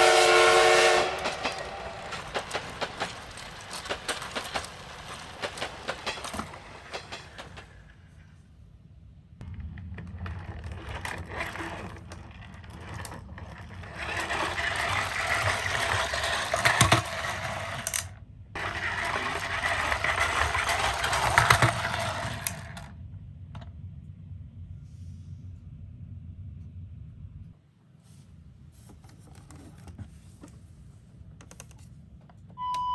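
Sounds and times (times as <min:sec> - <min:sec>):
toy cars rattling on plastic track: 0:00.0 - 0:08.0, 0:09.4 - 0:22.9
small clicks: 0:01.1 - 0:07.8.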